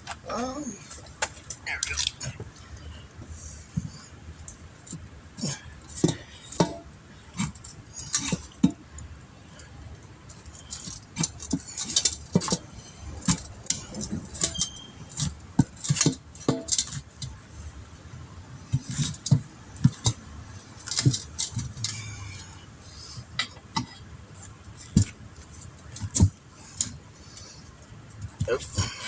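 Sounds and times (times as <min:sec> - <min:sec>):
metal tools clinking on wheel rim: 0:10.3 - 0:17.3.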